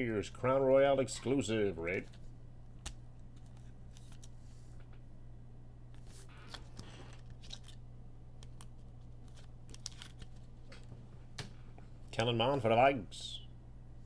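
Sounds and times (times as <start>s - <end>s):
low electrical hum: 0.0s - 14.0s
cards being flipped through: 2.0s - 4.8s, 5.9s - 7.8s, 8.4s - 10.9s.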